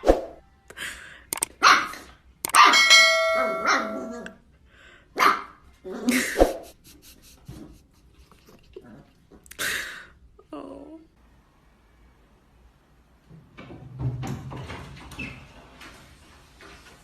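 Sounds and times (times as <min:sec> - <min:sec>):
dog barking: 0:01.6 - 0:02.9, 0:03.5 - 0:04.2, 0:05.2 - 0:05.6
doorbell-like chime: 0:02.7 - 0:04.1.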